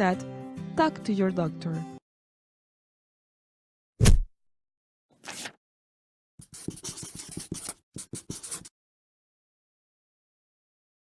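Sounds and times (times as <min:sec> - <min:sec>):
scratchy strokes: 0:06.4 - 0:08.7.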